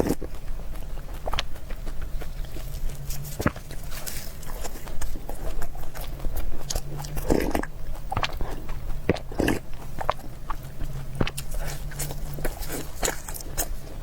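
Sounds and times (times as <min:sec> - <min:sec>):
person chewing food: 0:00.0 - 0:14.0.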